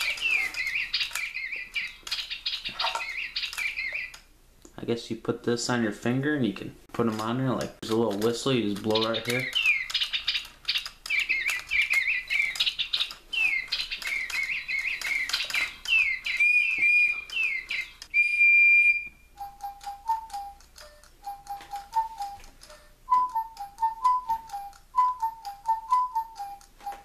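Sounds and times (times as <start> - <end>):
toy bird chirping: 0.0 - 4.3, 8.7 - 27.0
toy bird melody: 0.0 - 4.3, 8.6 - 27.0
sharp clicks: 0.0 - 4.8, 7.1 - 18.2
plastic whistle blast: 16.0 - 19.3, 23.1 - 26.4.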